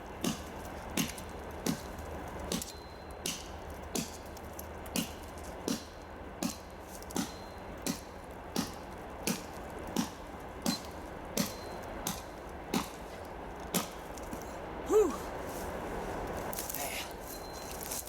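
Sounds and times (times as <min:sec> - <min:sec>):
axe chopping log: 0:00.2 - 0:01.9, 0:05.0 - 0:13.1, 0:13.7 - 0:14.0.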